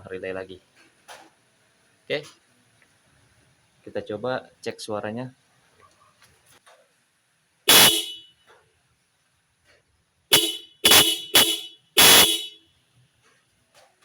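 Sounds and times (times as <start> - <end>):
car horn honks: 7.7 - 8.4, 10.3 - 12.6.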